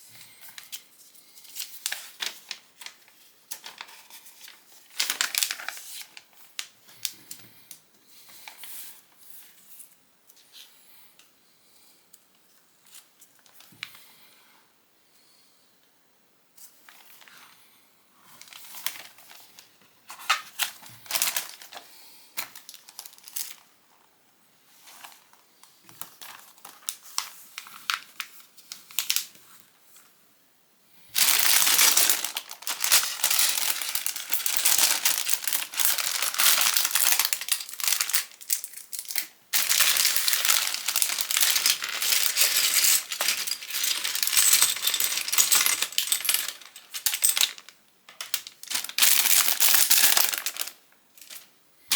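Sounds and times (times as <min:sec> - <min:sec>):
plastic bag crinkling: 0:01.6 - 0:07.4, 0:18.4 - 0:23.7, 0:31.2 - 0:51.5.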